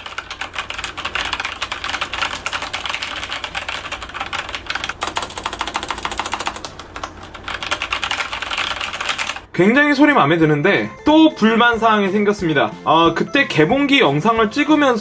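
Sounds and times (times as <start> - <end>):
fast mechanical keyboard typing: 0.0 - 10.4.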